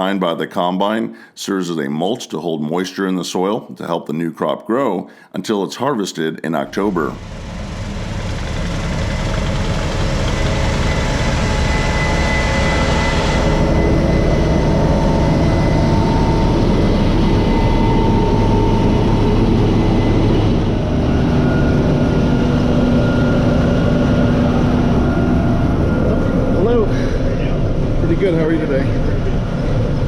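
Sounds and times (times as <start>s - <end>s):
diesel engine drone: 6.6s - 30.0s
machinery whining tones: 6.6s - 30.0s.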